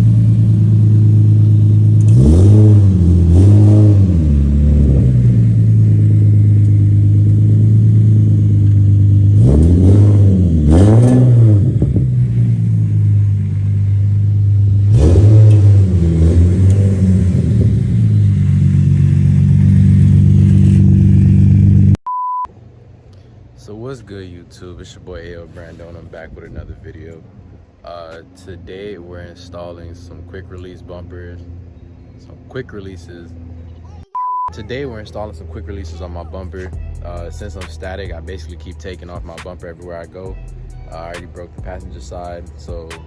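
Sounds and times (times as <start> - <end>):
car engine idling and revving: 0.0 - 22.0, 24.1 - 43.0
short steady beep: 22.0 - 22.5, 34.1 - 34.6.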